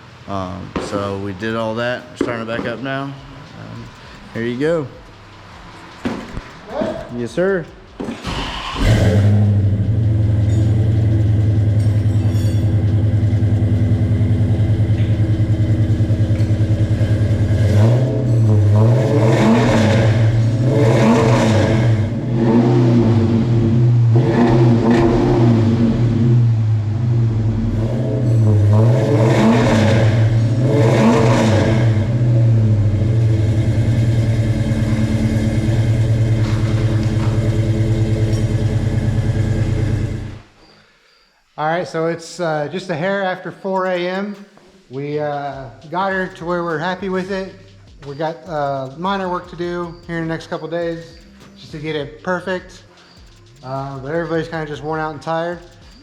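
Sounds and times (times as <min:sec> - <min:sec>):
car engine idling and revving: 0:00.0 - 0:40.5, 0:45.5 - 0:56.0.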